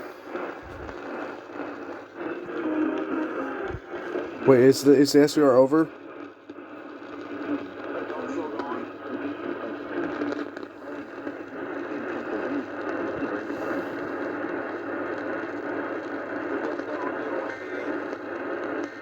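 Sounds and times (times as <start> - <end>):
radio static hiss: 0.0 - 19.0.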